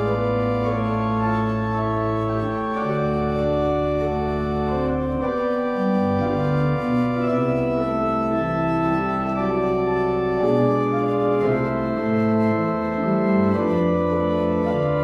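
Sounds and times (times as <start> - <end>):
organ playing sustained chords: 0.0 - 15.0.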